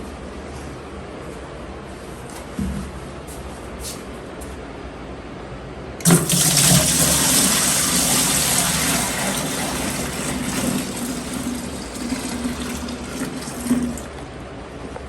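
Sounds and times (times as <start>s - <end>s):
water gushing into tub: 6.0s - 14.3s.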